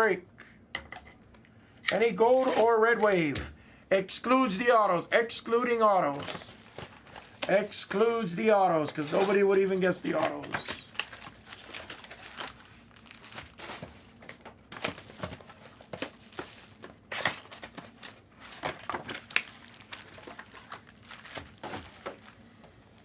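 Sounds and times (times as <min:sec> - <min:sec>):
wrapping crinkling and tearing: 0:05.5 - 0:23.0.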